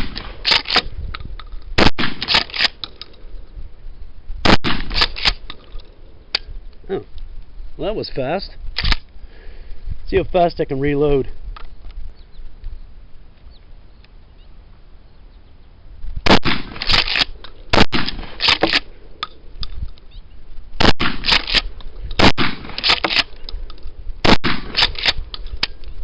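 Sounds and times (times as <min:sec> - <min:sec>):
shotgun shots: 0:00.0 - 0:00.9, 0:01.8 - 0:02.8, 0:04.4 - 0:05.4, 0:16.2 - 0:18.9, 0:20.8 - 0:23.3, 0:24.2 - 0:25.3
shotgun pump racking: 0:00.4 - 0:00.9, 0:02.2 - 0:03.1, 0:08.8 - 0:09.1, 0:16.8 - 0:20.0, 0:21.2 - 0:21.8, 0:22.7 - 0:23.8, 0:24.7 - 0:25.9.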